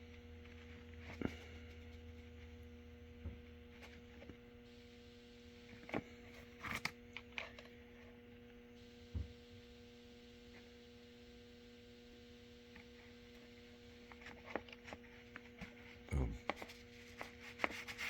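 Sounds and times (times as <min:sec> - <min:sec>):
faint electrical hum: 0:00.0 - 0:18.0
rustles and clicks of handling: 0:12.6 - 0:18.0.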